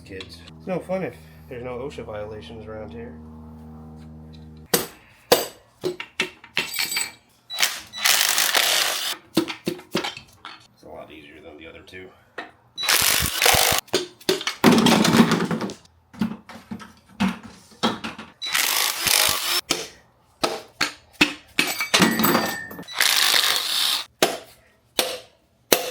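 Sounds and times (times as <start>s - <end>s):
tools clanking on metal parts: 6.0s - 10.7s, 21.5s - 23.5s.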